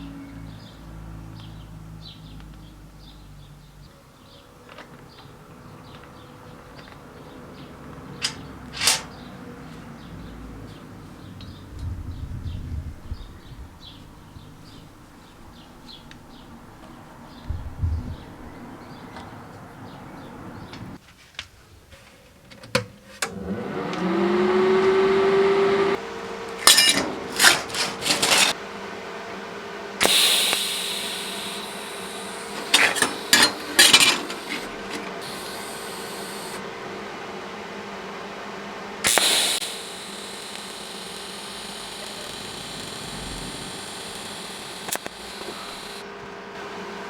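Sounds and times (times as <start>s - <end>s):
motor humming: 11.0s - 19.2s, 23.3s - 47.0s
hissing and clicking bursts: 30.0s - 36.6s, 39.1s - 46.0s.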